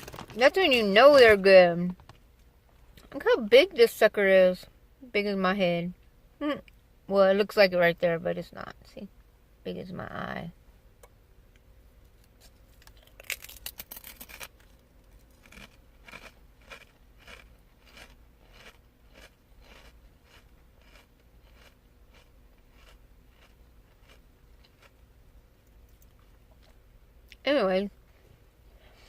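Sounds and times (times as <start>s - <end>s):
potato crisp crunching: 12.4s - 25.0s.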